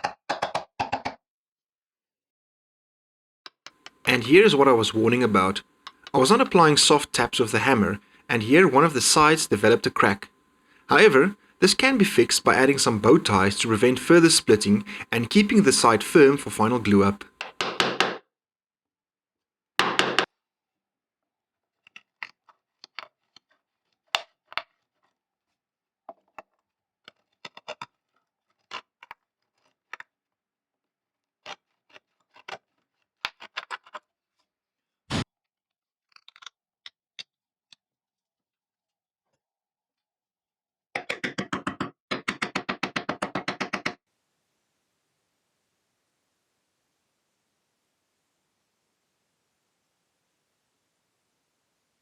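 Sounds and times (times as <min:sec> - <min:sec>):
hand tools tapping wood: 0:16.6 - 0:18.2, 0:41.0 - 0:44.0.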